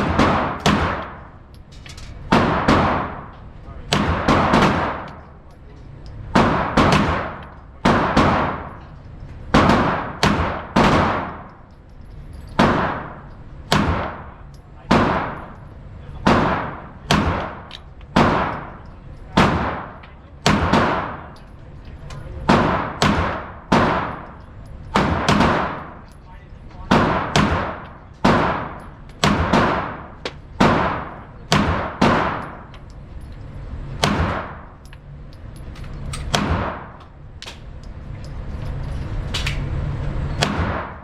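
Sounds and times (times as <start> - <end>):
pistol shots with echo: 0.0 - 1.4, 2.3 - 5.4, 6.3 - 8.8, 9.5 - 11.7, 12.6 - 15.6, 16.2 - 21.5, 22.4 - 26.2, 26.8 - 32.8, 34.0 - 34.8, 36.2 - 37.0, 40.4 - 41.0.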